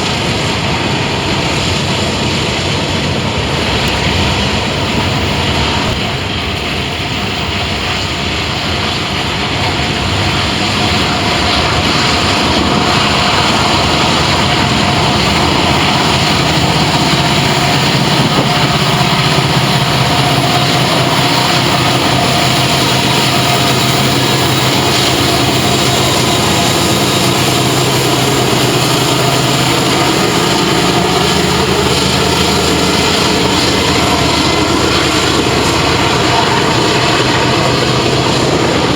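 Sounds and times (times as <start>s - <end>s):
diesel locomotive engine drone: 0.0s - 38.9s
train rolling noise: 0.0s - 38.9s.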